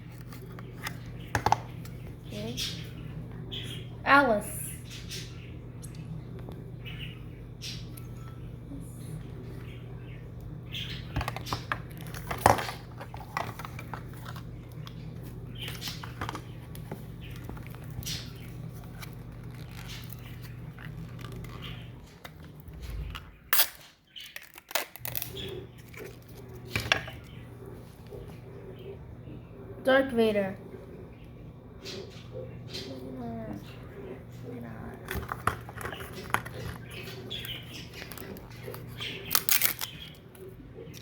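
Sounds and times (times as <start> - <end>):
plastic packaging crinkling: 11.3 - 27.2, 35.1 - 40.4.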